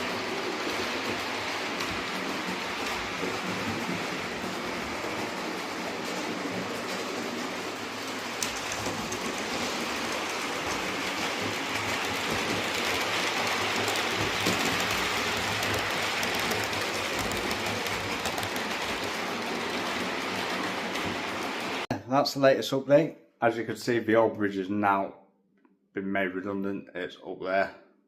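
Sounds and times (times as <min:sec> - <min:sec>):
model train rushing on track: 0:00.0 - 0:21.9
train wheels clicking: 0:00.0 - 0:21.9.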